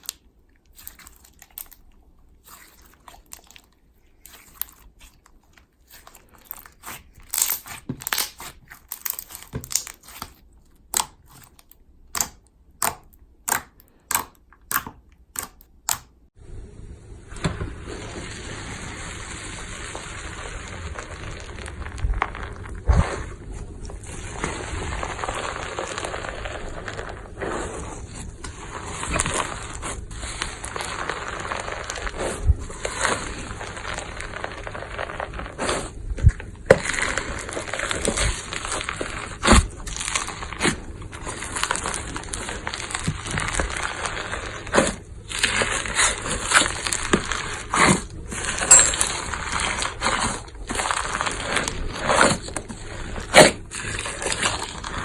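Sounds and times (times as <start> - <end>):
slime popping and squishing: 0.0 - 16.3, 18.0 - 55.0.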